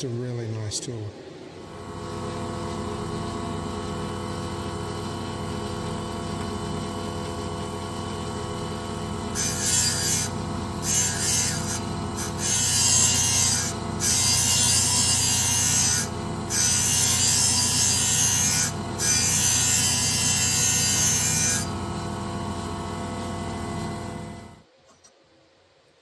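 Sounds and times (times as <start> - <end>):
grinder motor running: 1.8 - 24.6
grinding wheel hissing grind: 9.2 - 24.6.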